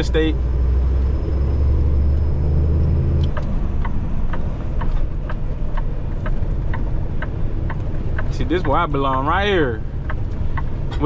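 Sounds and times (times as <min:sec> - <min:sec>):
road noise: 0:00.0 - 0:11.0
truck engine drone: 0:00.0 - 0:11.0
light ticking: 0:03.1 - 0:11.0.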